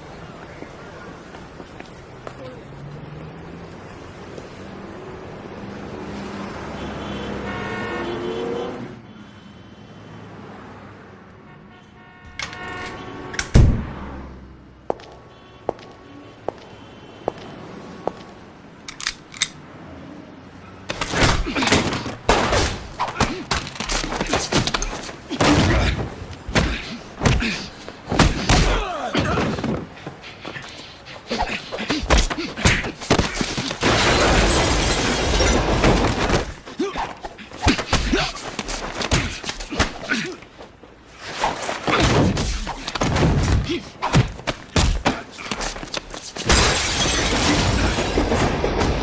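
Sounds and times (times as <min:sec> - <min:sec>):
vehicle passing: 0:02.1 - 0:08.9, 0:13.8 - 0:15.2
car horn: 0:06.6 - 0:10.2, 0:11.4 - 0:13.6, 0:15.2 - 0:17.6.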